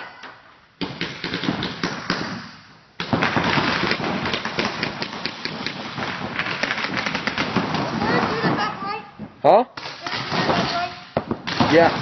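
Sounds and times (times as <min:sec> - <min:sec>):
markers firing rapidly: 0:10.0 - 0:12.0.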